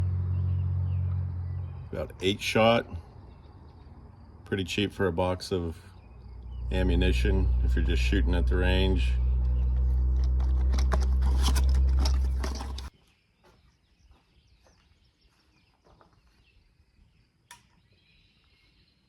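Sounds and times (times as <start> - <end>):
low rumble with crackling: 5.8 - 12.9
sharp click: 17.5 - 17.7.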